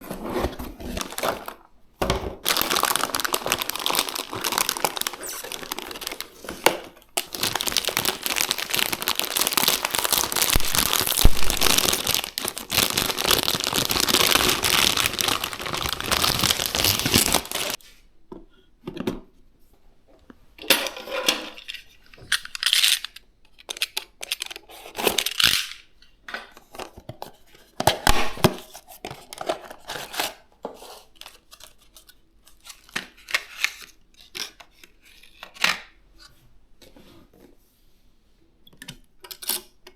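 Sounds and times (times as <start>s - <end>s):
packaging rustling and tearing: 0.1s - 17.8s.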